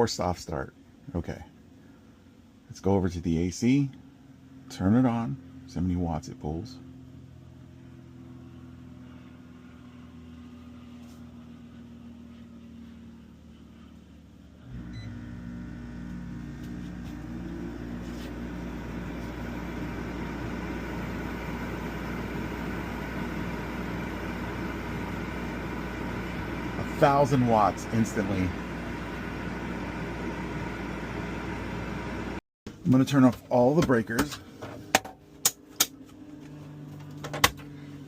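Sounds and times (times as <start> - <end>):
air conditioner fan humming: 0.0 - 38.0
compressor kicking on: 14.6 - 36.0.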